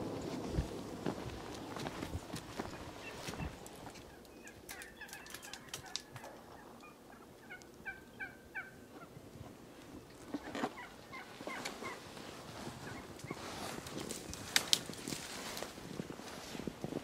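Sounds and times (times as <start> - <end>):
turkey gobbling: 3.0 - 9.1, 10.4 - 12.1.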